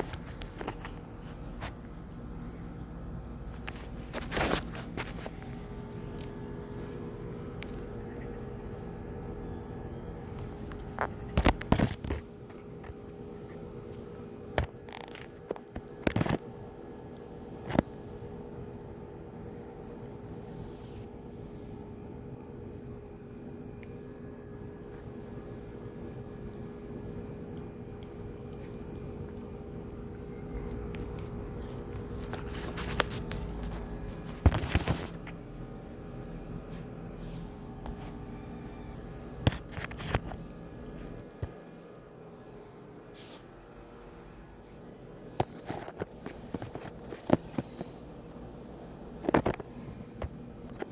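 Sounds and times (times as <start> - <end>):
constant held tone: 0.0 - 50.9
steady low hum: 0.0 - 50.9.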